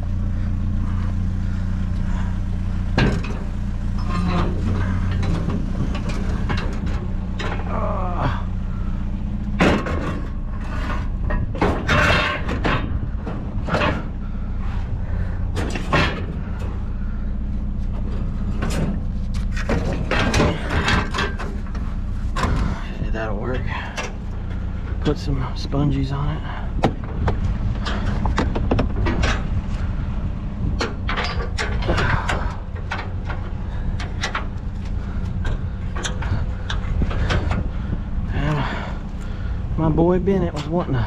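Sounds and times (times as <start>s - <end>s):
vehicle engine idling: 0.0s - 41.0s
metal knocks and thumps: 2.9s - 7.8s, 9.3s - 17.1s, 17.8s - 23.0s, 26.7s - 38.9s.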